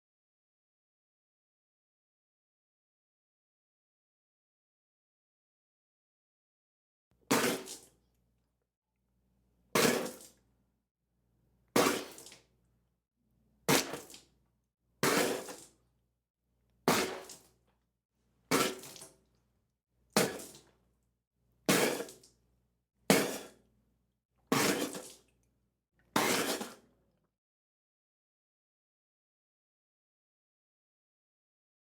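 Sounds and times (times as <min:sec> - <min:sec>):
person spitting out liquid: 0:11.8 - 0:12.4, 0:21.7 - 0:22.3, 0:24.5 - 0:25.2, 0:26.2 - 0:26.8.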